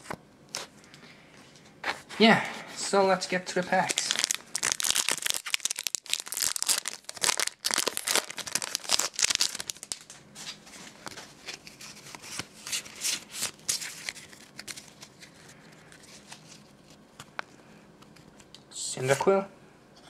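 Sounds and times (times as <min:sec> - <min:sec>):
foil wrapper tearing and crinkling: 0:03.8 - 0:10.2, 0:11.5 - 0:15.3.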